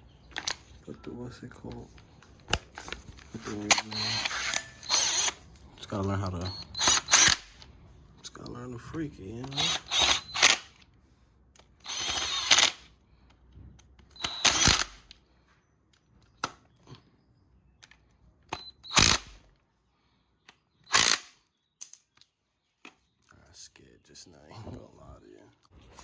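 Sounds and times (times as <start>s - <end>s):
power drill bursts: 3.3s - 7.6s, 9.4s - 10.8s, 11.8s - 12.9s, 14.1s - 15.1s, 18.5s - 19.4s, 20.8s - 21.3s.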